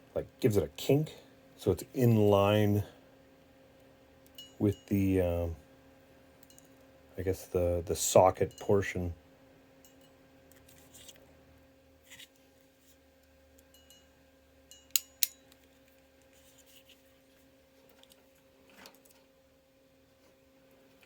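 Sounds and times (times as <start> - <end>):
steady low hum: 0.0 - 21.0
crimping tool metallic clicks: 14.7 - 15.5.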